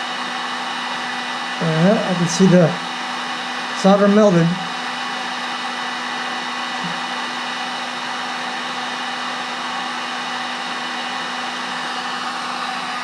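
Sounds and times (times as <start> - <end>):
heat gun blowing: 0.0 - 13.0.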